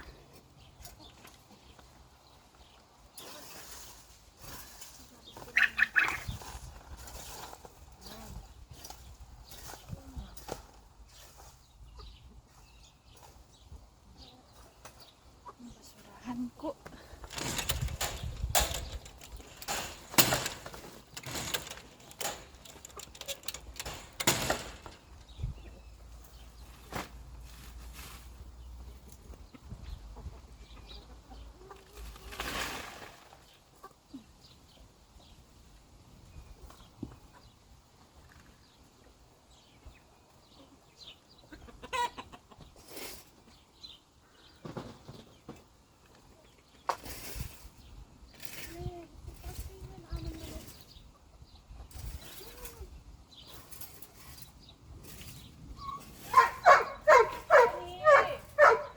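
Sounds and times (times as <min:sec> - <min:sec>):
broom sweeping leaves: 0:03.2 - 0:05.5, 0:06.4 - 0:07.8, 0:26.6 - 0:28.6, 0:47.0 - 0:47.8
chickens clucking: 0:05.2 - 0:06.6, 0:11.1 - 0:26.7, 0:29.2 - 0:32.3, 0:33.6 - 0:34.5, 0:40.6 - 0:43.6, 0:55.8 - 0:58.9
brief rustling: 0:16.9 - 0:25.4.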